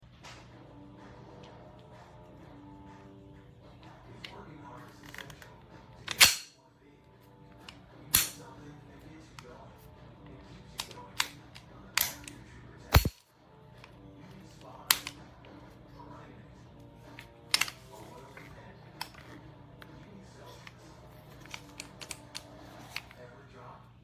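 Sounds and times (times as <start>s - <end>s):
air pistol pops: 12.9s - 13.2s.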